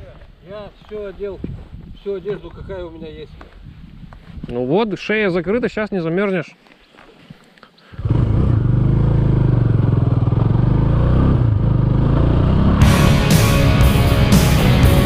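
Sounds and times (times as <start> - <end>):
motorcycle engine running: 8.0 - 15.0
rock music with drums: 12.8 - 15.0.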